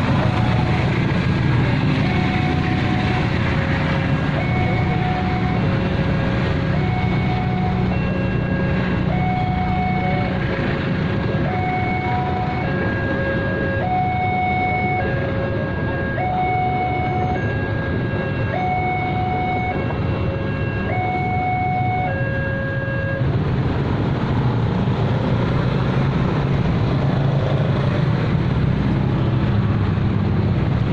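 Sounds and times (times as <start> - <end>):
level-crossing two-tone siren: 0.0 - 10.6, 11.2 - 23.3.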